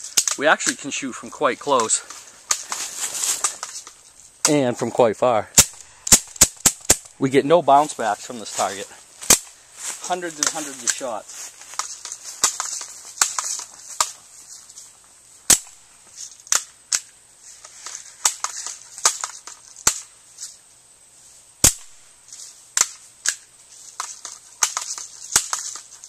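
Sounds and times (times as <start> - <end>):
air gun shots hitting metal: 15.5 - 15.8, 21.6 - 22.0.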